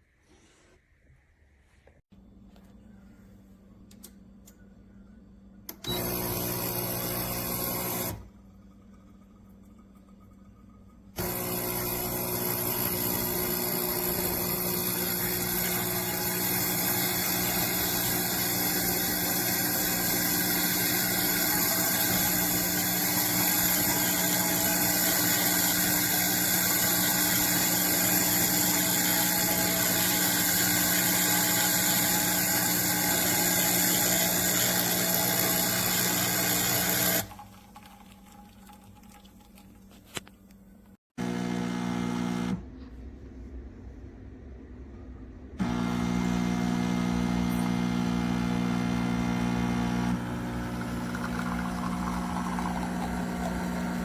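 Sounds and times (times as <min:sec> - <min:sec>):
espresso machine pump humming: 0:05.8 - 0:10.1, 0:11.2 - 0:37.7, 0:41.2 - 0:42.6, 0:45.6 - 0:54.0.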